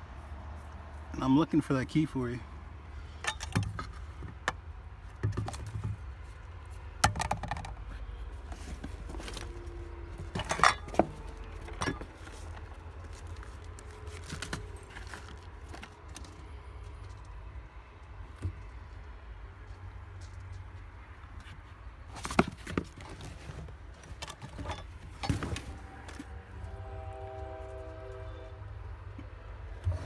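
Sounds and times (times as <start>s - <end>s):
hands rummaging through objects: 8.4s - 17.2s, 22.1s - 26.4s.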